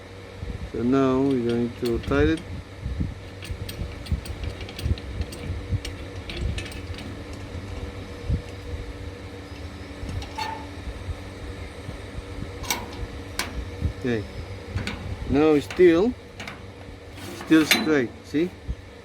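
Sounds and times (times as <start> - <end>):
fan hum: 0.0 - 19.0
clamp clicks and knocks: 12.6 - 13.7.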